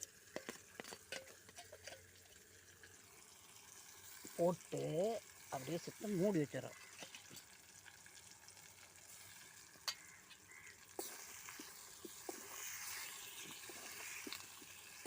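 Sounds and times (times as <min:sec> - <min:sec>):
food sizzling in oil: 0:00.0 - 0:15.0.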